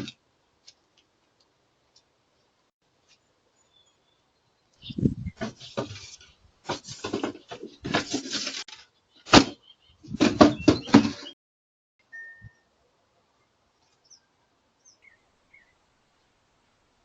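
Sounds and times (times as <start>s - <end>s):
knocks clatters and scraping: 5.3s - 11.4s.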